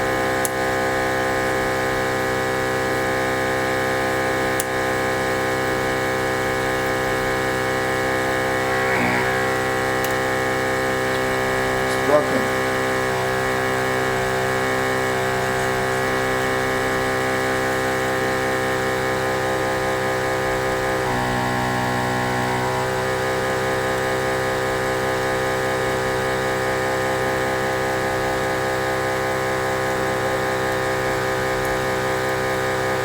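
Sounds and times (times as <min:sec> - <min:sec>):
machine motor humming: 0:00.0 - 0:33.0
higher motor tone: 0:05.1 - 0:24.6.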